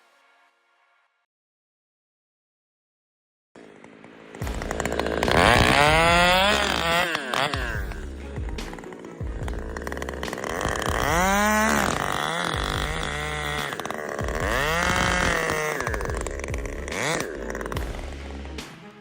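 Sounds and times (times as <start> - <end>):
engine revving: 3.6 - 19.0
low running hum: 4.4 - 18.5.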